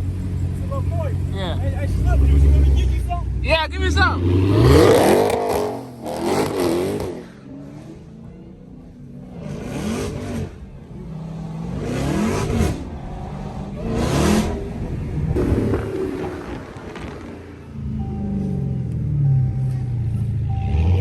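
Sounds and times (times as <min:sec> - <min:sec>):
car engine revving: 0:00.0 - 0:21.0.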